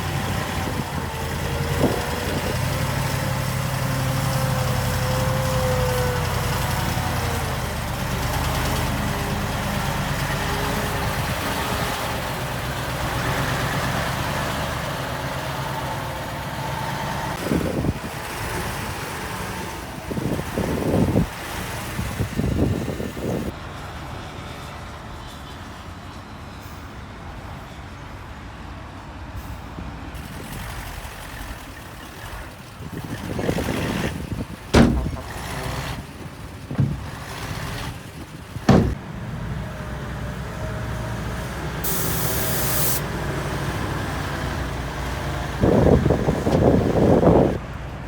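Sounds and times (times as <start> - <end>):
diesel machinery running: 0.0 - 28.6, 29.4 - 48.0
air hiss: 41.8 - 43.1.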